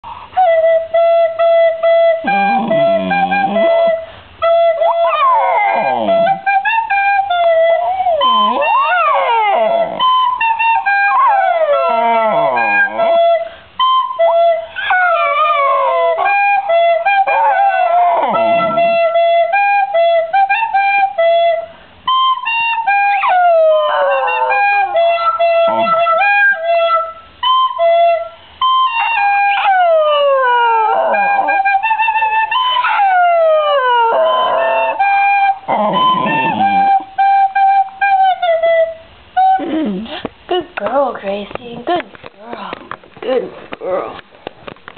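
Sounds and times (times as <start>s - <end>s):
recorder playing held notes: 0.0s - 40.2s
dog howling: 2.2s - 3.9s, 4.8s - 6.6s, 7.2s - 10.2s, 10.9s - 13.4s, 14.8s - 19.2s, 23.1s - 26.7s, 29.0s - 37.1s, 43.8s - 44.3s.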